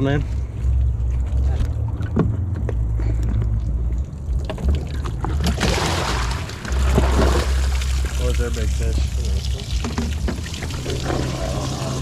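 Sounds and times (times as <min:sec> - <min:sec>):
low steady rumble: 0:00.0 - 0:12.0
water pouring and splashing: 0:04.0 - 0:12.0.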